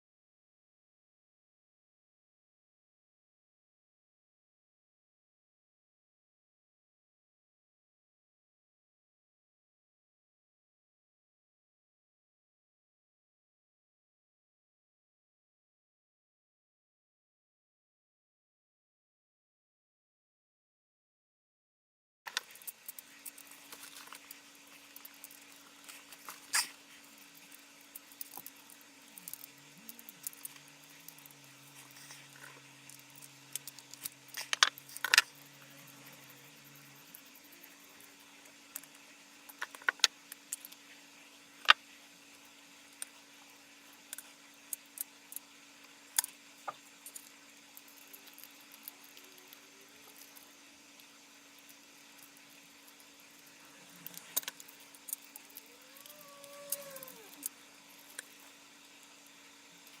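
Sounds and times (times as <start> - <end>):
small parts clicking and clinking: 22.3 - 40.8, 46.1 - 60.0
faint steady hum: 22.3 - 60.0.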